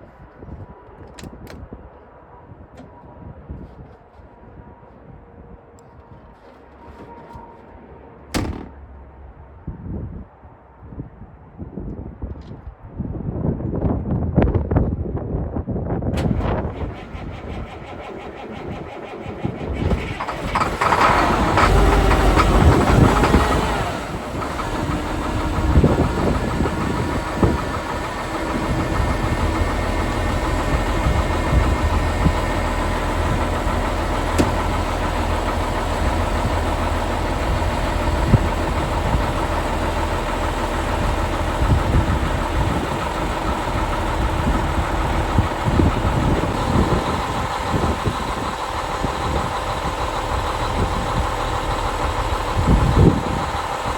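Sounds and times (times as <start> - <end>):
diesel truck engine starting and idling: 16.1 - 53.9.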